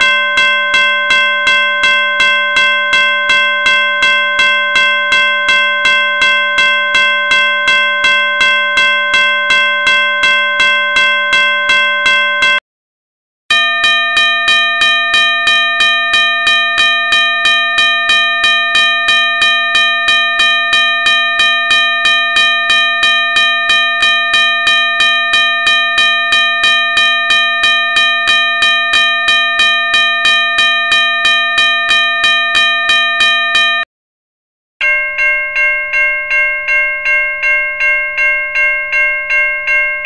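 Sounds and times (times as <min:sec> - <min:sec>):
level crossing bell ringing: 0:00.0 - 0:12.6, 0:13.5 - 0:33.9, 0:34.8 - 0:40.0.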